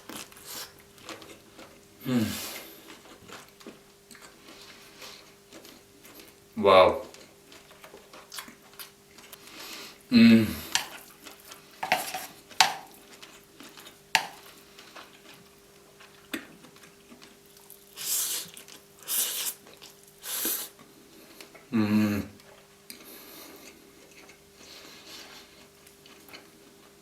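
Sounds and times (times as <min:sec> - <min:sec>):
chewing: 0:00.0 - 0:06.4, 0:07.0 - 0:21.7, 0:22.4 - 0:27.0
person humming with enjoyment: 0:02.0 - 0:02.6, 0:10.1 - 0:10.8, 0:21.7 - 0:22.4
person slurping noodles: 0:02.0 - 0:02.7, 0:18.0 - 0:19.6, 0:20.2 - 0:20.8.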